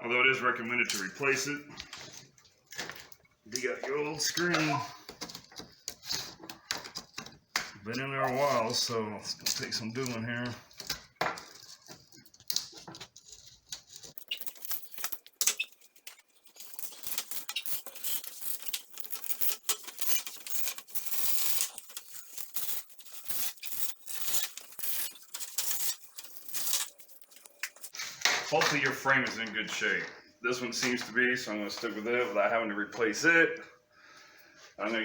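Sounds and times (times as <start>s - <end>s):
scraping and tearing screen mesh: 8.0s - 28.0s.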